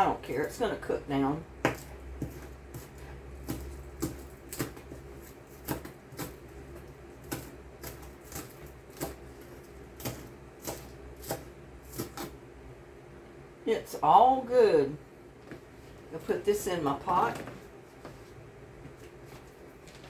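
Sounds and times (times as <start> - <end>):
knife chopping on cutting board: 1.6 - 12.4.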